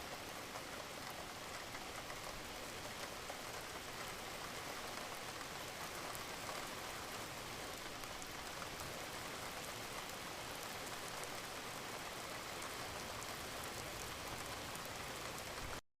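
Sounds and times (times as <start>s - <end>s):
rain falling: 0.0s - 15.8s.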